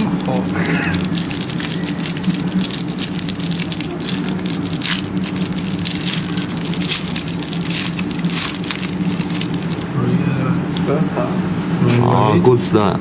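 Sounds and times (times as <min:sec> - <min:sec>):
card wrapper crinkling and tearing: 0:00.0 - 0:09.9
low hum: 0:00.0 - 0:11.8.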